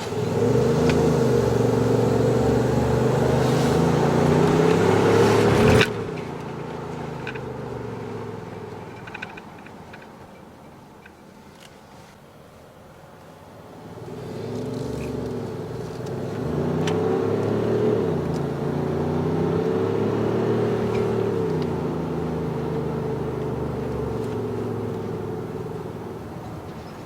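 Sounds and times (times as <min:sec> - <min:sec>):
synthesized engine drone revving: 0:00.0 - 0:06.0, 0:14.5 - 0:26.2.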